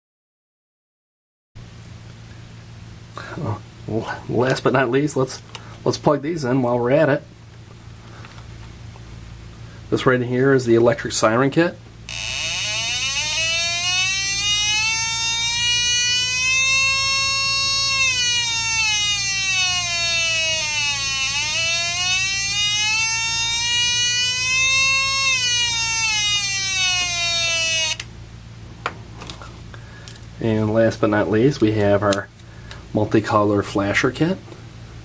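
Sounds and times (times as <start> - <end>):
electronic siren wailing: 12.1 - 28.1.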